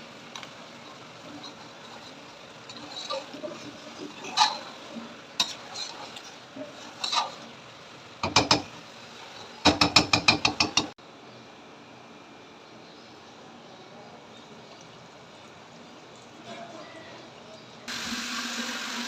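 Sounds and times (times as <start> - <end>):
metal utensil knocking on a pot: 9.7 - 10.9.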